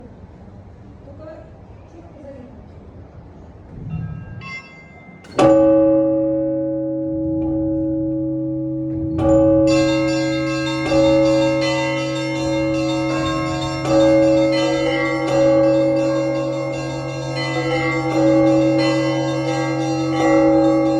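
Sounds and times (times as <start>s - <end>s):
large bell struck humming: 3.7s - 20.9s
small high bells ringing: 3.9s - 6.3s, 8.6s - 20.9s.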